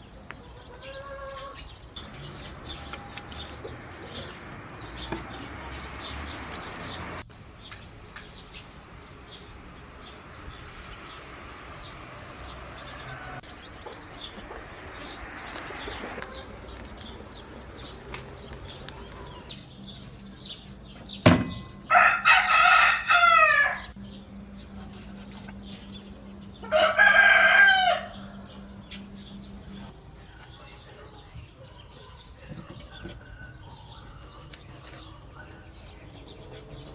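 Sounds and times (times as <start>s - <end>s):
rooster crowing: 12.7s - 14.0s, 21.9s - 24.0s, 26.6s - 28.6s.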